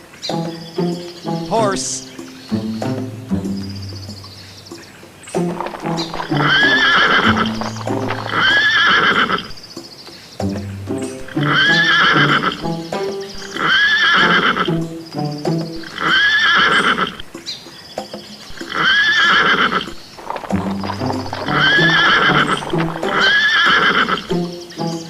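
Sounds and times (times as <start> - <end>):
light background music: 0.0 - 25.0
horse neighing: 5.6 - 9.5, 11.3 - 12.6, 13.4 - 14.8, 15.8 - 17.2, 18.6 - 24.3.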